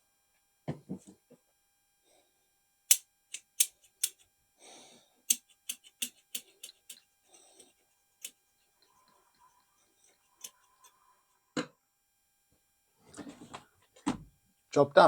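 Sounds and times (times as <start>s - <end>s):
sharp irregular clicks: 2.9s - 4.2s, 5.3s - 8.4s.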